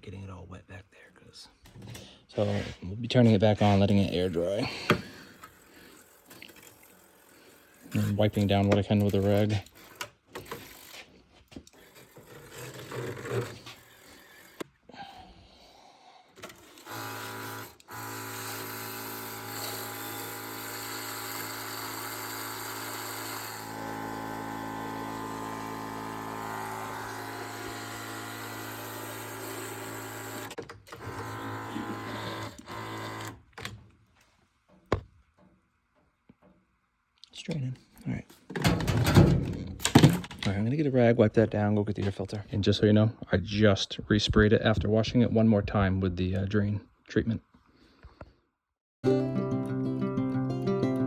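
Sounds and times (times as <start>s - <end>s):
small electric motor running: 5.4s - 8.4s, 16.6s - 33.4s.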